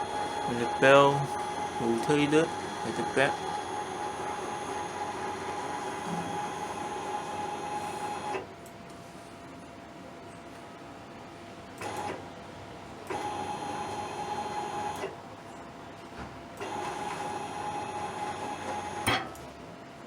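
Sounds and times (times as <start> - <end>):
motor whine: 0.0 - 8.4.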